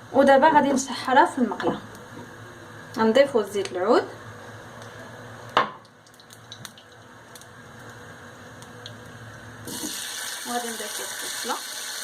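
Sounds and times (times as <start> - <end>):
oil pouring into frying pan: 9.6 - 12.0.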